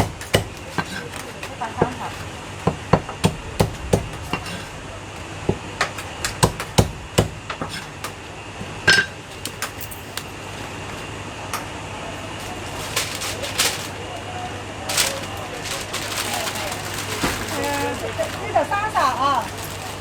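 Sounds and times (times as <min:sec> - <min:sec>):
cleaver chopping meat: 0:00.0 - 0:01.2, 0:06.2 - 0:07.8.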